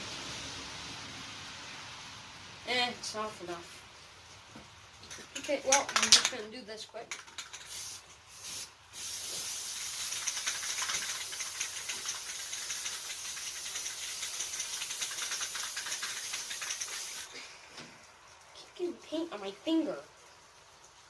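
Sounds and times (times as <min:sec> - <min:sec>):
spray paint can hissing: 0:07.1 - 0:17.3.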